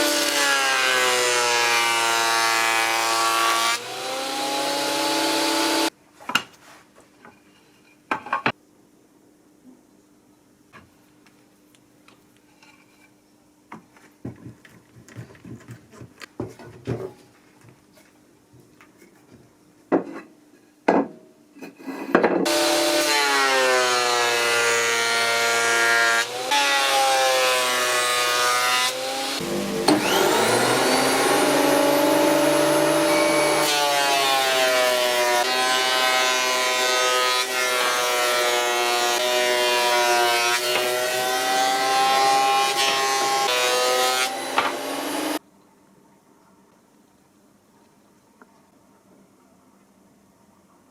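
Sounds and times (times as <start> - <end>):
power saw cutting wood: 0.0 - 5.9, 22.5 - 45.4.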